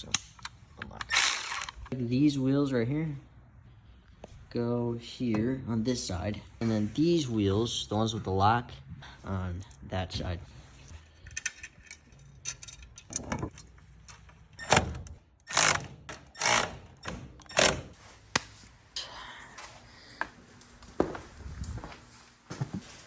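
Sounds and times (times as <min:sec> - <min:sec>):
metallic clicks and clinks: 0:11.2 - 0:15.2.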